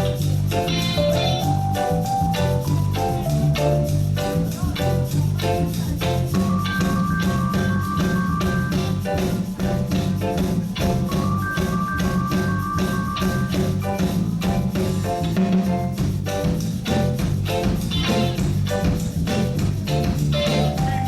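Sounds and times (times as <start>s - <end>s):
reggae band playing: 0.0s - 21.0s
held high notes: 6.3s - 15.5s.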